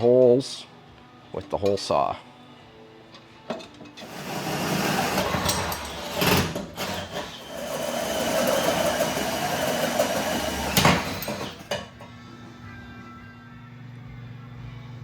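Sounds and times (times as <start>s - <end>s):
drill cutting through metal: 4.0s - 11.8s.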